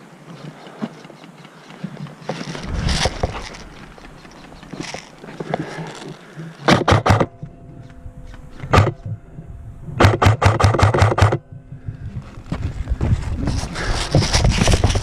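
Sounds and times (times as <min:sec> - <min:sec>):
airsoft rifle shots: 0:06.7 - 0:07.4, 0:10.0 - 0:11.4.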